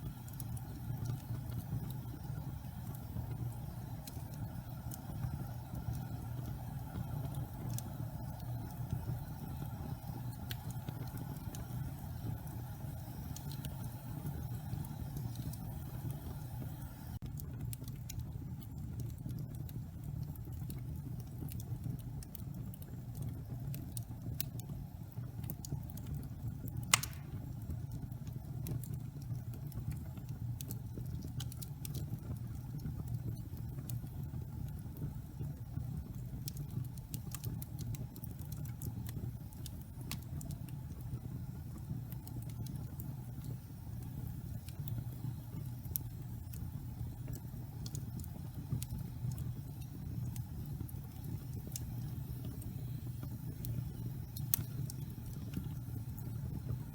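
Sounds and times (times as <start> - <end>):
flames rushing: 0.0 - 24.4, 25.0 - 35.5, 36.1 - 56.9
fire crackling: 0.0 - 56.9
sharp pop of burning wood: 26.9 - 27.6.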